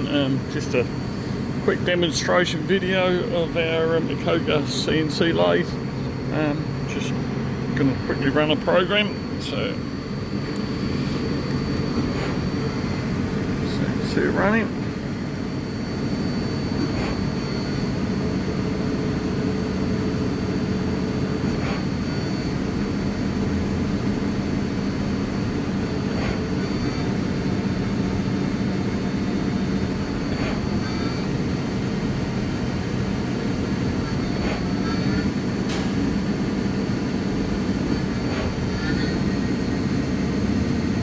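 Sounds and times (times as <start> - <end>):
lathe machine hum and whine: 0.0 - 41.0
short machine clicks: 35.7 - 36.1.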